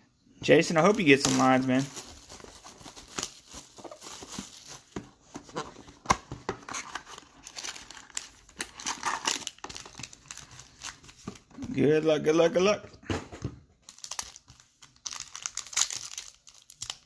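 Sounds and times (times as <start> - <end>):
plastic wrapping crinkling: 0.7 - 11.5, 13.8 - 17.0
plastic wrapping tearing: 6.8 - 11.1, 13.9 - 17.0.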